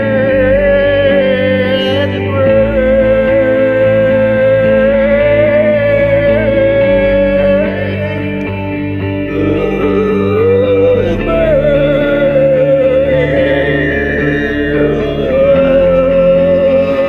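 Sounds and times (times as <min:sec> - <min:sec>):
sustained low chords: 0:00.0 - 0:17.0
wavering melody note: 0:09.2 - 0:17.0.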